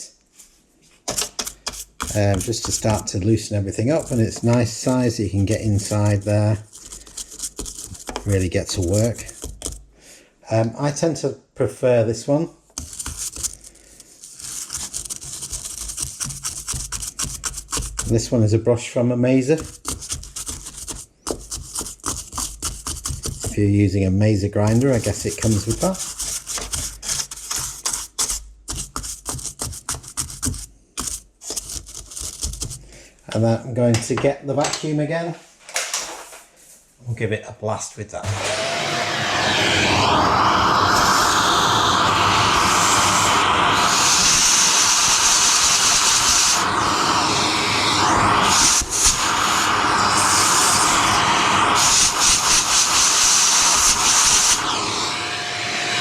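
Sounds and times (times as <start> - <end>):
brush bristles scratching: 1.1 - 3.2, 3.8 - 9.8, 12.8 - 18.2, 19.6 - 23.6, 24.6 - 32.8
vacuum cleaner running: 38.2 - 56.0.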